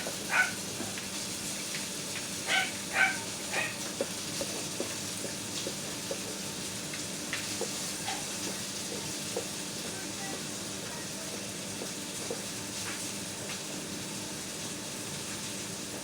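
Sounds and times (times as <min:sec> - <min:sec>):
pet high-pitched calls: 0:02.5 - 0:03.8.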